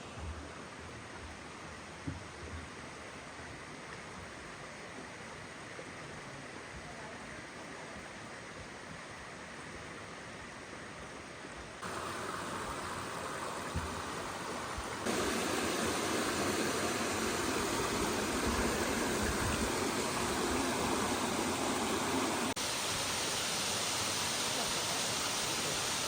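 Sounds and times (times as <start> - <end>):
flowing water rushing: 0.0 - 26.0.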